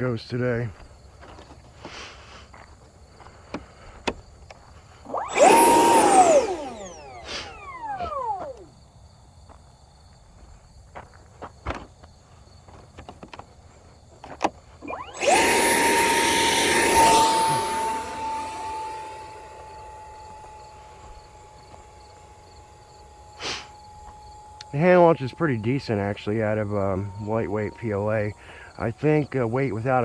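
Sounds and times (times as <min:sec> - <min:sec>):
electric ducted fan whine: 0:05.0 - 0:08.8, 0:14.8 - 0:30.0.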